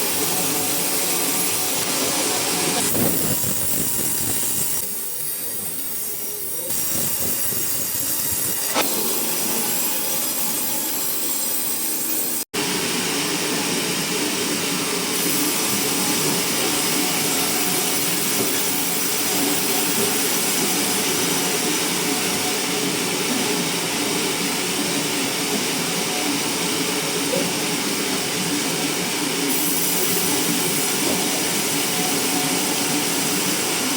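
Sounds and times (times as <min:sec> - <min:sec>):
sawmill saw cutting wood: 0:00.0 - 0:12.5, 0:15.2 - 0:22.5.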